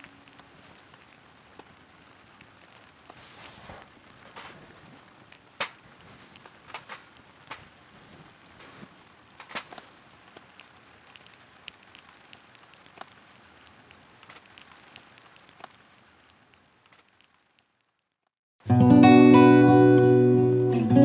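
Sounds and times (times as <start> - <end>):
raindrops ticking: 0.0 - 18.2
faint steady rain hiss: 0.0 - 21.0.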